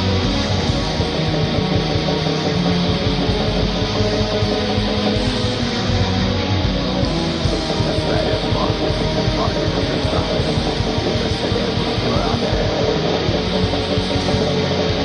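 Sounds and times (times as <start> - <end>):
distorted electric guitars: 0.0 - 15.0
fast drumming: 7.0 - 15.0.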